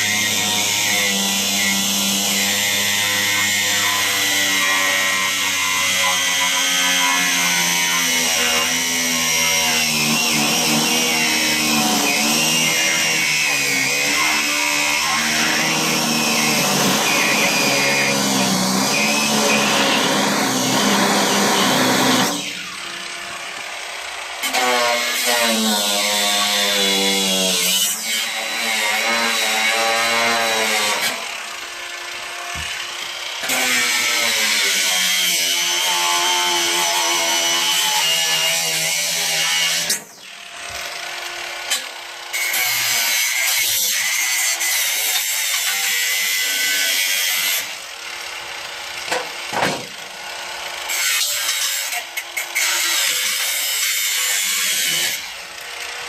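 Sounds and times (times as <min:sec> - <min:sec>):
electric power tool running: 0:06.4 - 0:25.1, 0:39.8 - 0:42.4.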